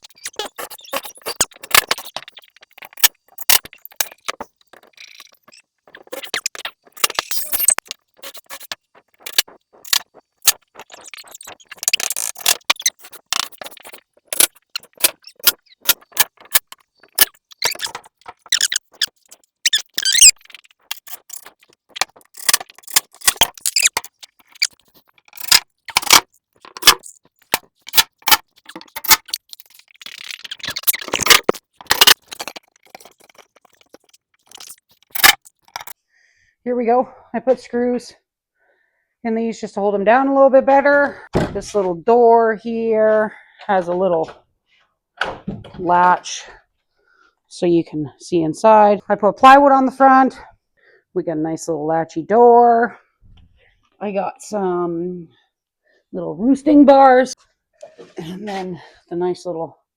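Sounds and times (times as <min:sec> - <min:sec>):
metal scraping: 0:00.0 - 0:35.9.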